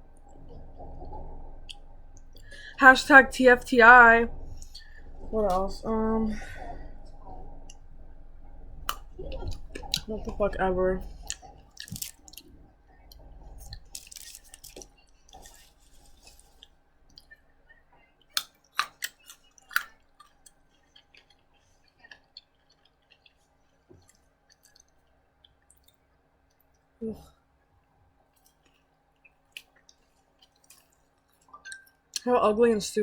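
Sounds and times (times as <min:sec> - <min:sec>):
chewing and mouth noises: 0:08.8 - 0:26.8, 0:28.3 - 0:32.3.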